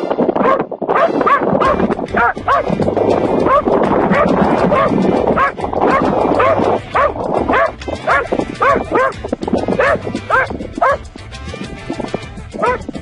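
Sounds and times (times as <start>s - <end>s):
dog barking: 0.4s - 2.7s, 3.5s - 11.1s, 12.6s - 12.9s.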